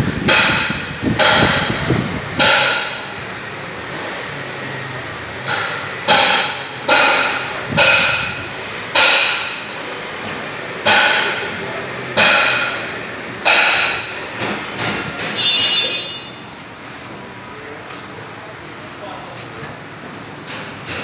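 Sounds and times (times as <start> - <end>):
sharp metallic knocks: 0.2 - 3.2, 5.4 - 9.8, 10.8 - 11.6, 12.2 - 16.4.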